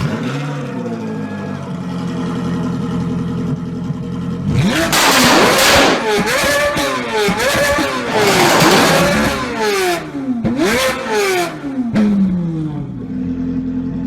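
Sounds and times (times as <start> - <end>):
race car engine revving: 0.0 - 1.1, 1.7 - 13.9
exhaust cracks: 4.5 - 12.9.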